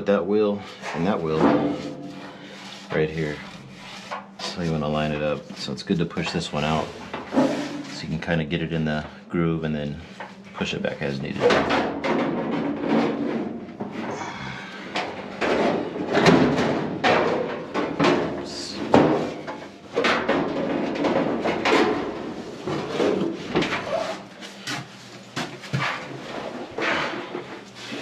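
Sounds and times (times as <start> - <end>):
sheet metal clunking and scraping: 6.3 - 8.1, 11.4 - 14.1.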